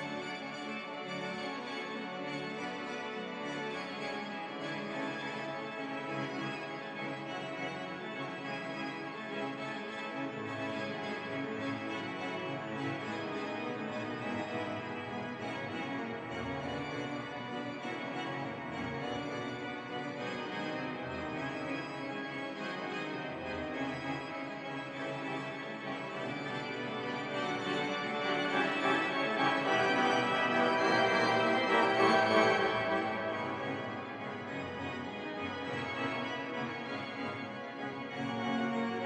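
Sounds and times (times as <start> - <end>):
pipe organ chords: 12.4 - 39.0
deep organ pedal bass notes: 23.1 - 38.8.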